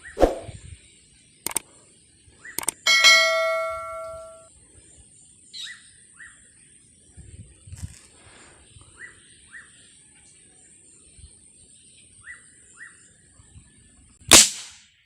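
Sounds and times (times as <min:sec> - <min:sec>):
small bird chirping: 0:01.5 - 0:01.7, 0:02.4 - 0:04.4.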